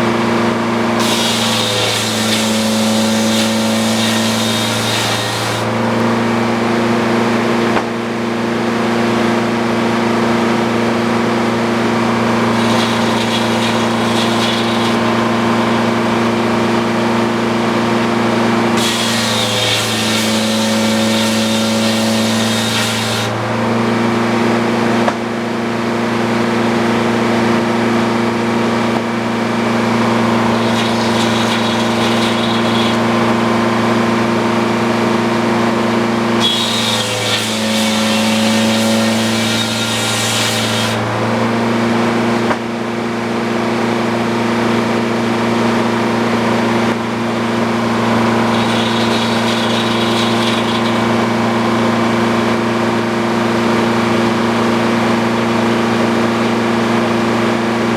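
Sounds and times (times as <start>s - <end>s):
saw cutting through log: 0.0s - 6.4s, 11.1s - 23.8s, 29.6s - 41.6s, 47.3s - 56.0s
sawmill machine hum: 0.0s - 42.4s, 43.4s - 57.9s.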